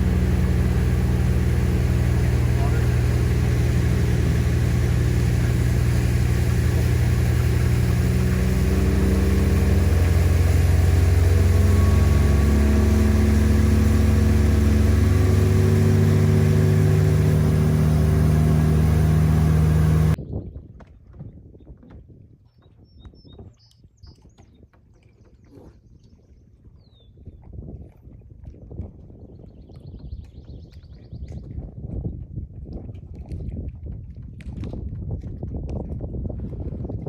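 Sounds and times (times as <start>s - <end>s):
boat motor running: 0.0s - 20.2s.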